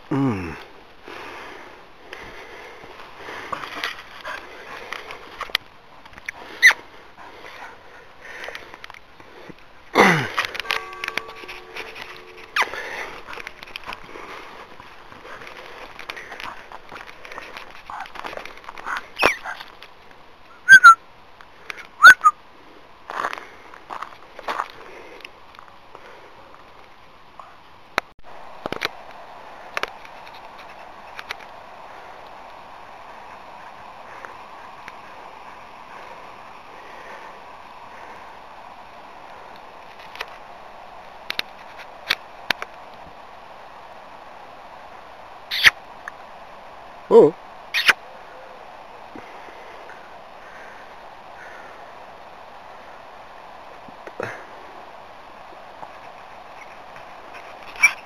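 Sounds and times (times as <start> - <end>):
crackle: 0.0 - 48.3, 49.0 - 58.0
background hiss: 0.0 - 58.0
loud whistles: 20.6 - 21.0, 22.0 - 22.4.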